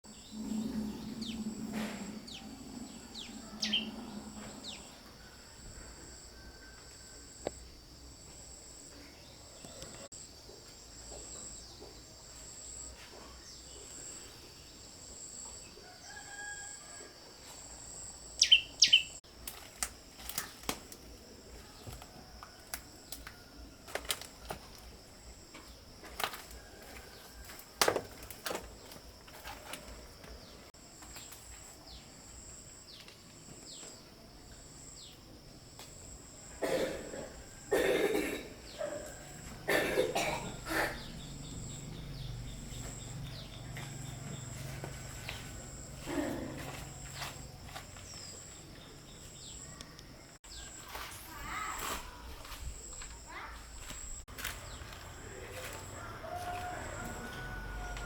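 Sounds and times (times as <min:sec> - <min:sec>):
bird chirps: 0:02.2 - 0:05.0, 0:18.4 - 0:19.2.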